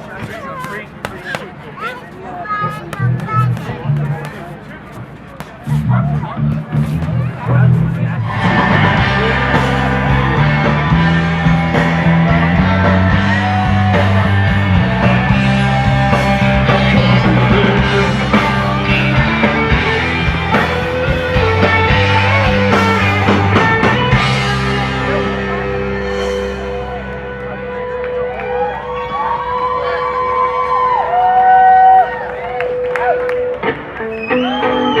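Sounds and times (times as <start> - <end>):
bass line: 5.7 - 31.3
rock music: 7.7 - 30.2
electric guitars: 8.2 - 35.0.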